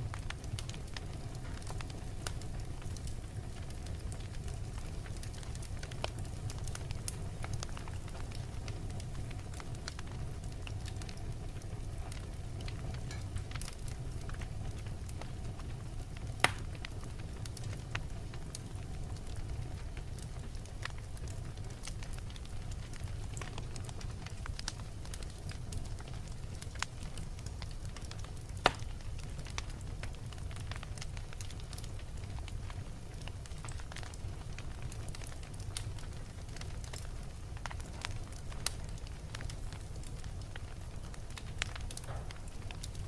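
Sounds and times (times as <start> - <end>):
wood fire rumbling and crackling: 0.0 - 43.0
loud pop from fire: 12.6 - 14.3, 16.4 - 16.8, 28.0 - 29.7, 41.6 - 42.8.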